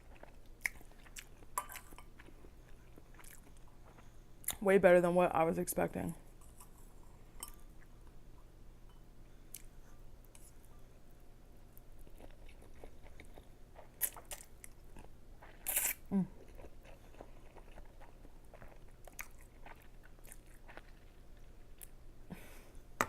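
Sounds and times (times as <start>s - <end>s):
wet mouth chewing sounds: 12.0s - 21.9s.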